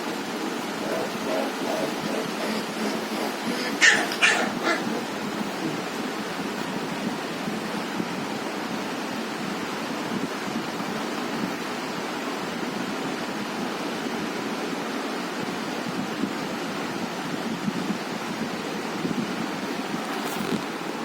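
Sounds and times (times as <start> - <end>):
steady rushing hiss: 0.0 - 10.0.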